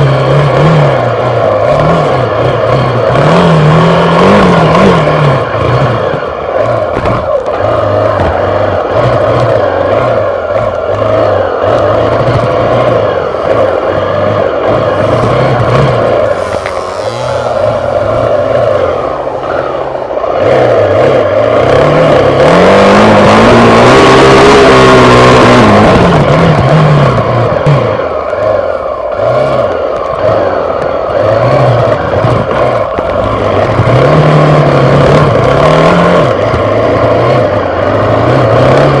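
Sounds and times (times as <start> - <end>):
heavy noise: 0.0 - 39.0
motorcycle engine revving: 0.0 - 39.0.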